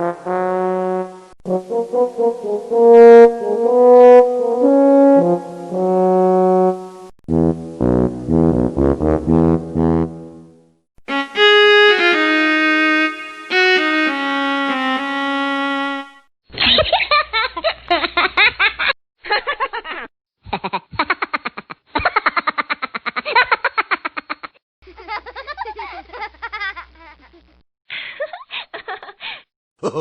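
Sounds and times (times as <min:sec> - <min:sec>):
viola playing held notes: 0:11.1 - 0:16.2
cartoon laughter sound effect: 0:20.5 - 0:27.6.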